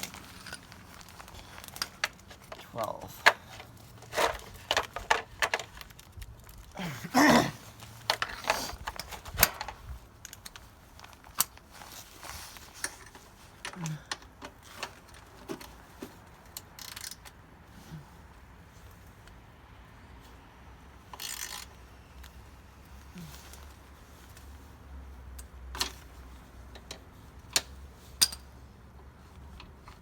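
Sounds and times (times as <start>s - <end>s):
tools clattering: 1.6s - 5.8s.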